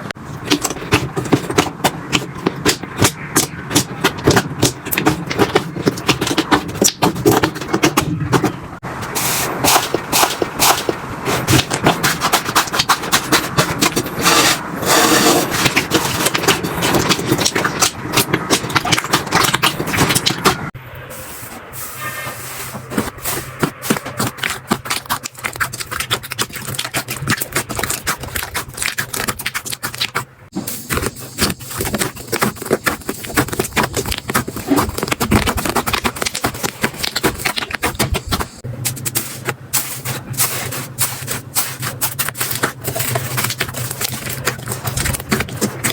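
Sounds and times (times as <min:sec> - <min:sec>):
slime crackling and popping: 0:09.7 - 0:20.7, 0:23.3 - 0:30.2, 0:30.9 - 0:45.9.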